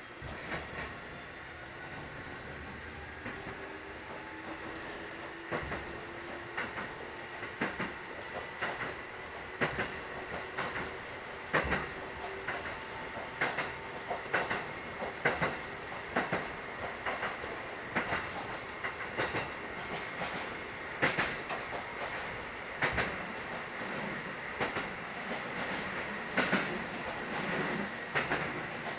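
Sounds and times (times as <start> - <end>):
train running hum: 0.0 - 28.9.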